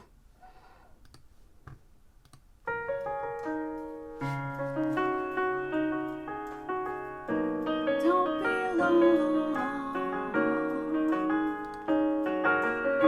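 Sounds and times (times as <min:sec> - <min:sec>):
piano chords ringing: 0:02.7 - 0:13.0.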